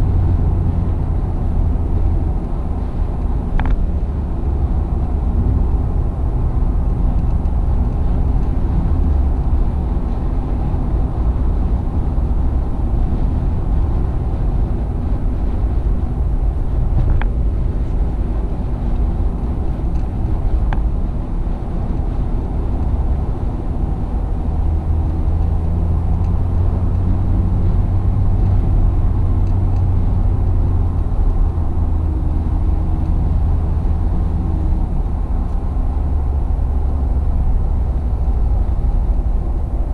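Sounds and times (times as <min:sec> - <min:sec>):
car cabin road rumble: 0:00.0 - 0:39.9.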